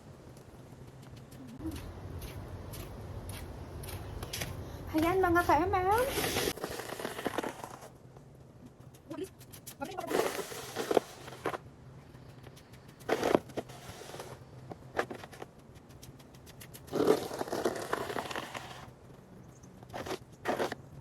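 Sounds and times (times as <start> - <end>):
snow shovel scraping snow: 5.9 - 7.9, 10.0 - 11.6, 13.1 - 14.4, 16.9 - 18.9, 20.0 - 20.8.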